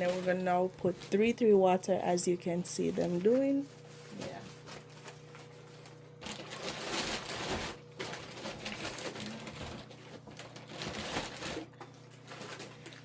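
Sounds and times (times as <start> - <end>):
plastic bags rustling: 0.0 - 1.8, 2.6 - 13.0.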